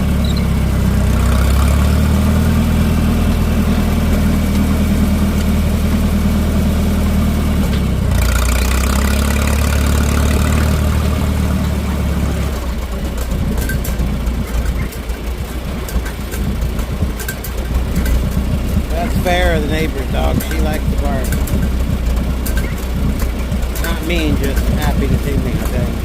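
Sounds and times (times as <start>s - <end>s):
high-pitched mechanical whine: 0.0s - 26.0s
tractor engine running: 0.0s - 26.0s
scattered clicks: 12.9s - 26.0s.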